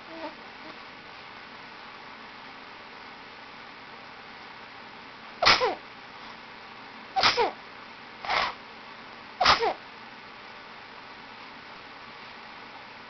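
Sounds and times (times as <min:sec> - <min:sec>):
person sneezing: 0:05.4 - 0:05.8, 0:07.2 - 0:07.6, 0:09.4 - 0:09.8.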